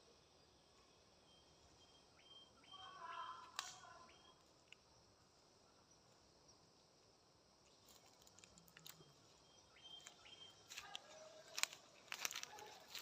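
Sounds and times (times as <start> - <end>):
soft clicks and rustles: 7.6 - 9.1.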